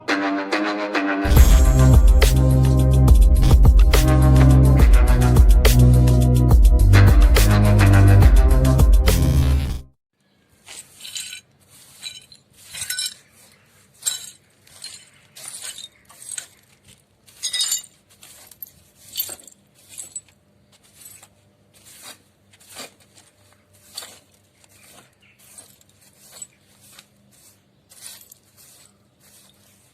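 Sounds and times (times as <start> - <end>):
broken glass clinking and scraping: 10.9 - 13.3, 14.0 - 20.4.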